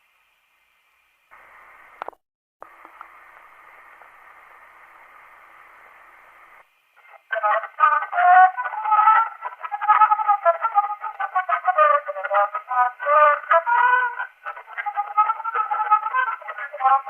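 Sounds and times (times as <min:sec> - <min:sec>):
record surface hiss and crackle: 0:00.0 - 0:17.0
music: 0:07.0 - 0:17.0.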